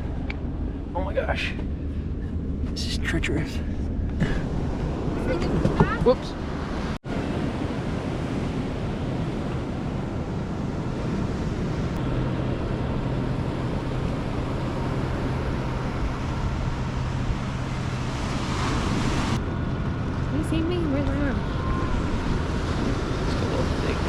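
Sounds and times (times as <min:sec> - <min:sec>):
wind buffeting microphone: 0:00.0 - 0:24.0
ocean surf washing on shore: 0:04.3 - 0:20.2.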